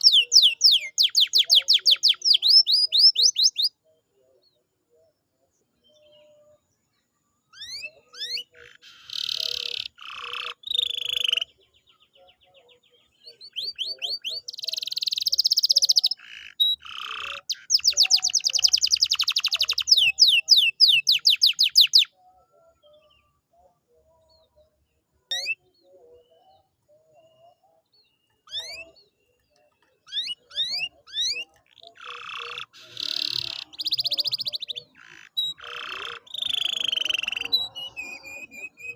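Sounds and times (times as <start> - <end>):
canary singing: 0.0 - 4.0, 7.5 - 38.9.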